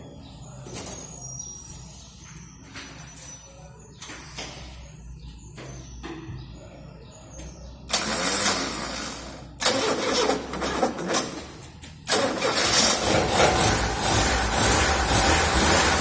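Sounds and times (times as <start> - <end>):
car engine cranking and starting: 7.9 - 16.0.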